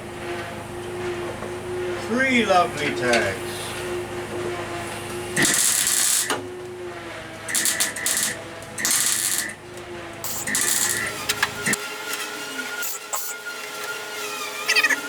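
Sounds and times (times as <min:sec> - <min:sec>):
generator humming: 0:00.0 - 0:15.0
welder crackling bursts: 0:05.3 - 0:06.4, 0:07.4 - 0:09.6, 0:10.2 - 0:11.8.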